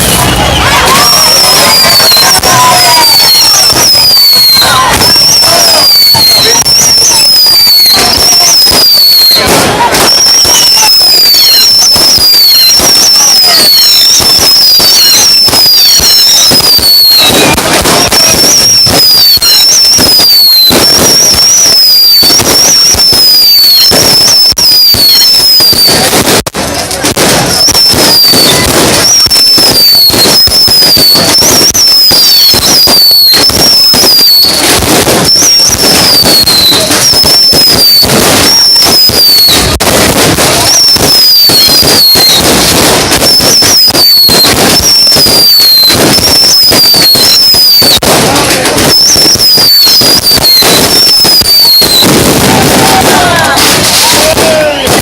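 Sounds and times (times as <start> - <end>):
firework whistle falling in pitch: 0.0 - 26.5, 27.2 - 55.0
fireworks bangs and crackles: 0.0 - 55.0.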